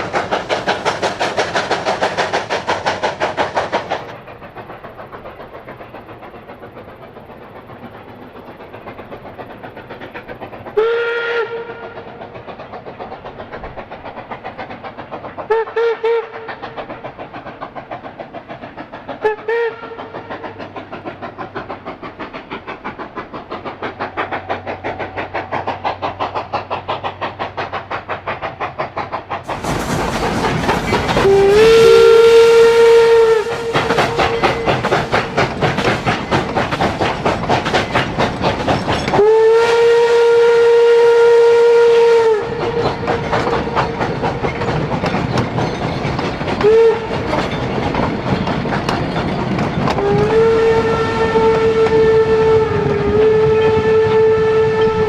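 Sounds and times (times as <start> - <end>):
steam locomotive chugging: 0.0 - 55.0
steam whistle blasts: 10.8 - 12.0, 19.2 - 20.0, 31.2 - 35.0, 39.2 - 43.1, 46.6 - 47.1, 50.0 - 55.0.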